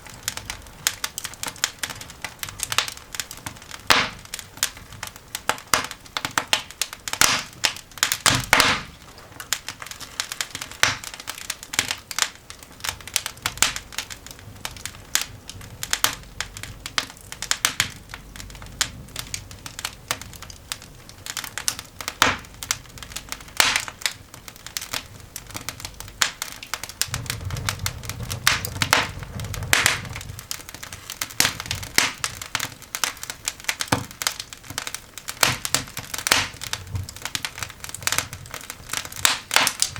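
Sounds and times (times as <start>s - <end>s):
coal fire crackling: 0.0s - 39.9s
low rumble: 26.8s - 32.6s.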